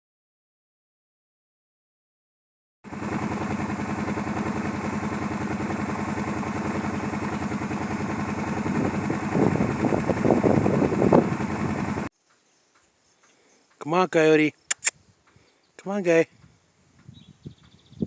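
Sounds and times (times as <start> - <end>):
atv engine idling: 2.9 - 12.1.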